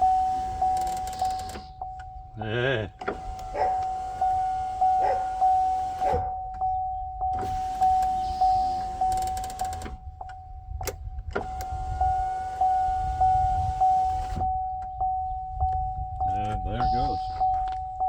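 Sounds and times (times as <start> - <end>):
power window motor: 0.0 - 2.1, 3.0 - 14.6
car warning chime dinging: 0.0 - 18.0.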